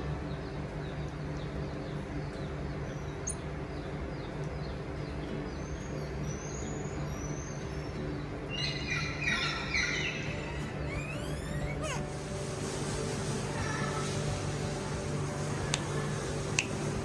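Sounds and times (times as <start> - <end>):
low mechanical hum: 0.0 - 17.0
animal chirping: 5.6 - 17.0.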